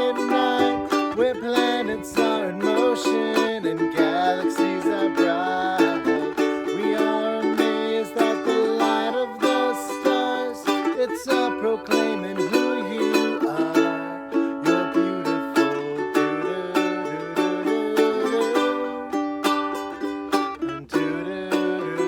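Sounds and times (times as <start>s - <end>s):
strummed ukulele-like instrument: 0.0s - 22.0s.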